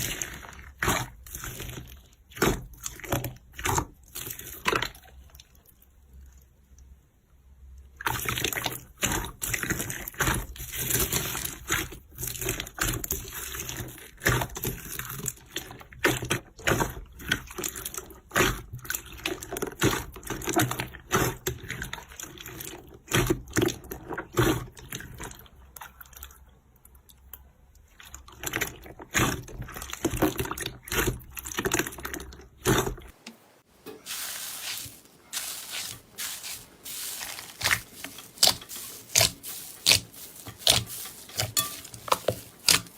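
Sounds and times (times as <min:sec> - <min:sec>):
slime squelching and popping: 0:34.1 - 0:42.9.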